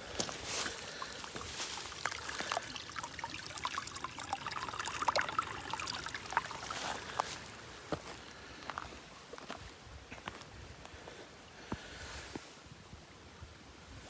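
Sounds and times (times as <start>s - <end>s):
stream trickling: 0.0s - 8.9s
water plinks and bubbles: 1.0s - 7.5s.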